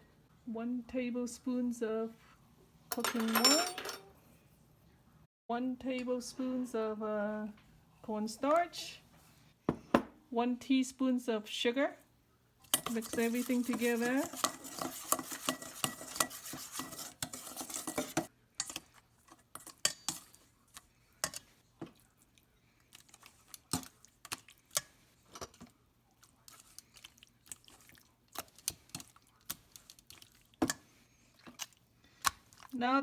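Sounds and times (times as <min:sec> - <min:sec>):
utensil clinking against dish: 0:02.9 - 0:04.0, 0:12.7 - 0:18.9
wet stirring: 0:12.6 - 0:32.8.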